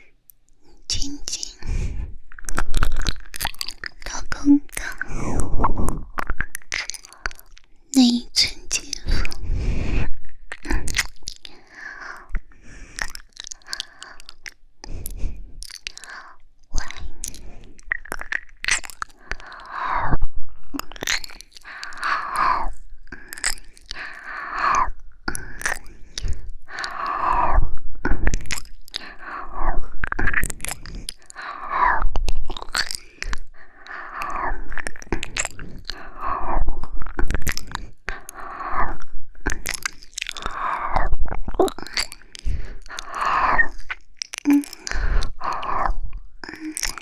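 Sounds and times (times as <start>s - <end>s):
wet licking and kissing: 1.0s - 5.1s, 5.9s - 19.8s, 20.8s - 22.5s, 23.2s - 24.7s, 25.3s - 27.2s, 28.3s - 29.4s, 30.2s - 31.7s, 32.4s - 36.2s, 36.8s - 38.8s, 39.4s - 47.0s.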